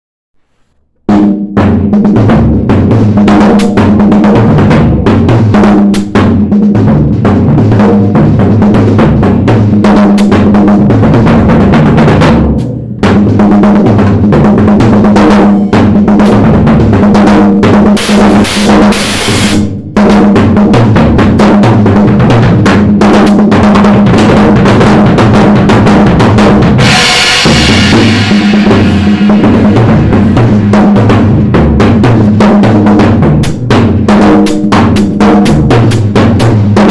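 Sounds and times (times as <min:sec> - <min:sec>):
drum kit played fast: 0:00.4 - 0:36.9
cymbals washing: 0:18.0 - 0:19.8, 0:26.7 - 0:32.6.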